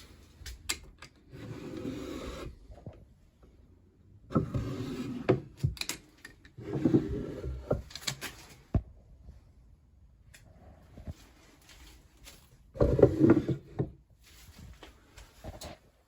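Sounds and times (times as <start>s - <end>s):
wooden drawers sliding: 1.3s - 2.6s, 4.3s - 5.8s, 6.6s - 7.9s, 12.8s - 13.9s.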